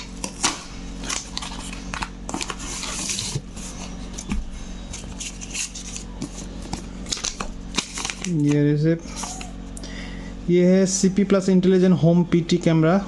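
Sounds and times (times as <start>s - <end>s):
packaging rustling: 0.0s - 9.5s.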